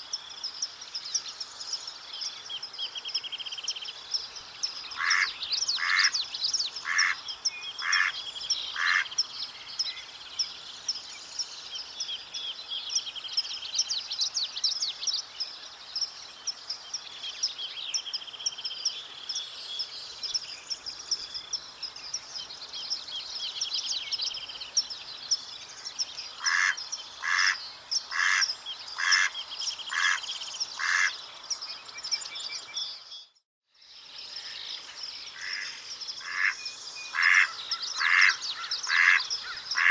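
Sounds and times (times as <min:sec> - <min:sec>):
birds twittering and trilling: 0:00.0 - 0:39.9
duck quacking: 0:26.4 - 0:28.4.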